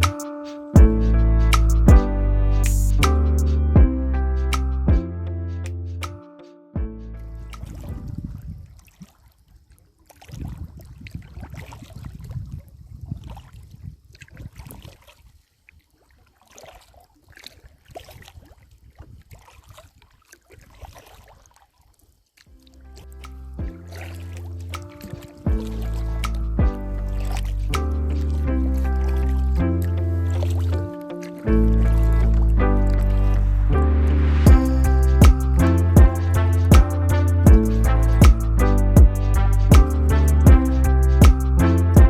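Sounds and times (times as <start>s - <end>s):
low rumble: 0.8s - 5.5s, 31.5s - 42.0s
sustained chords over heavy bass: 0.8s - 6.0s, 25.5s - 30.3s, 31.5s - 42.0s
paddle splashing water: 7.6s - 33.4s.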